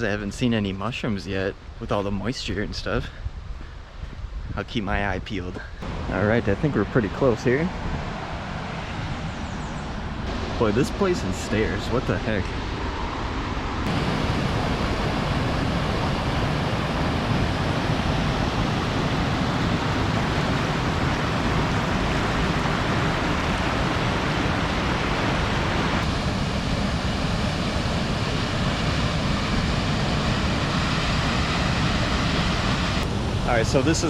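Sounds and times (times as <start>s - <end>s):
waterfall rushing: 13.9s - 26.1s.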